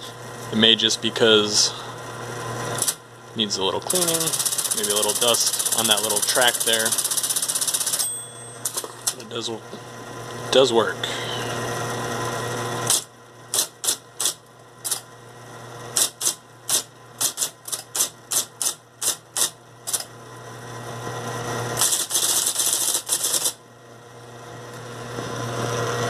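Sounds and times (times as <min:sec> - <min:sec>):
low machine hum: 0:00.0 - 0:17.2
electric typewriter typing: 0:02.8 - 0:03.0, 0:03.9 - 0:09.2, 0:12.9 - 0:15.0, 0:16.0 - 0:20.1, 0:21.8 - 0:23.6.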